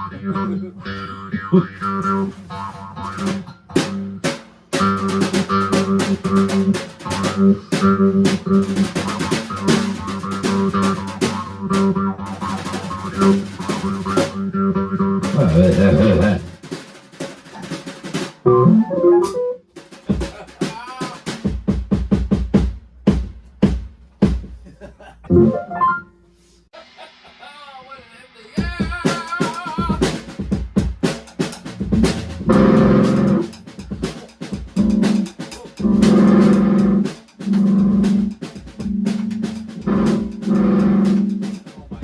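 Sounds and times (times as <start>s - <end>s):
bass guitar: 0.0s - 16.6s, 31.7s - 33.8s, 34.8s - 41.6s
rock band playing: 1.9s - 14.5s, 15.1s - 19.5s, 28.6s - 41.8s
drum and cymbal hits: 3.1s - 14.4s, 15.2s - 18.4s, 19.3s - 24.7s, 26.8s - 42.0s
kick drum thuds: 21.4s - 24.6s, 35.8s - 37.0s, 37.8s - 39.0s, 39.8s - 41.1s.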